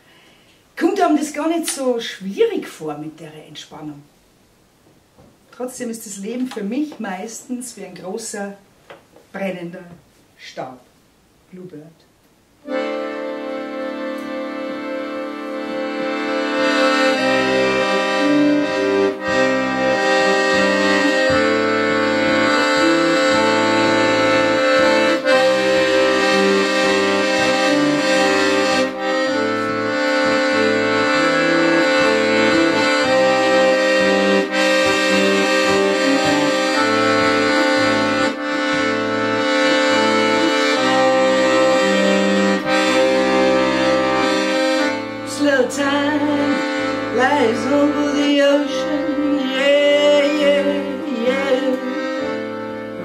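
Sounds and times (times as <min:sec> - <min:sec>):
accordion playing: 0:12.6 - 0:53.0.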